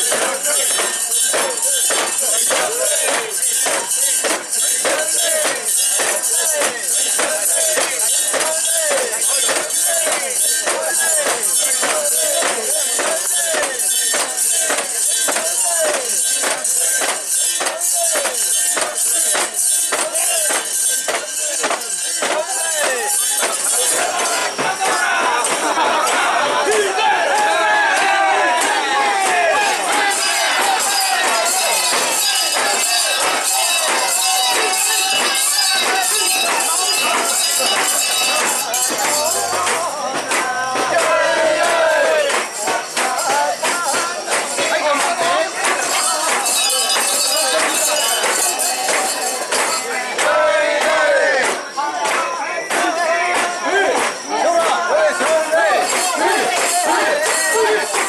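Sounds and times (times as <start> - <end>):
metal rings jangling: 0.0 - 24.9, 29.7 - 40.0
metallic jingling and clinking: 0.0 - 27.6, 29.6 - 40.2, 41.9 - 50.1
people chanting in unison: 0.0 - 58.0.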